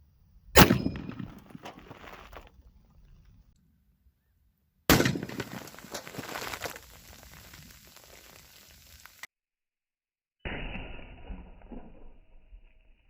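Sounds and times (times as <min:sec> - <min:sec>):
rifle shot: 0:00.6 - 0:02.0, 0:04.9 - 0:06.0
soda cans bursting and fizzing: 0:05.4 - 0:09.3.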